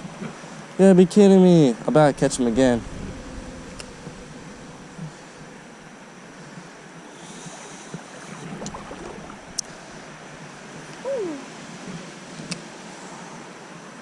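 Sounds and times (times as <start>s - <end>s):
creek water running: 3.8s - 12.4s.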